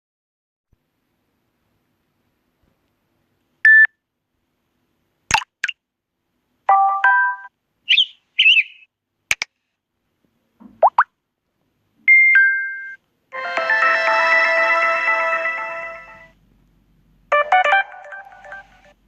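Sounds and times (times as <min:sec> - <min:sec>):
chirps: 0:07.9 - 0:08.9.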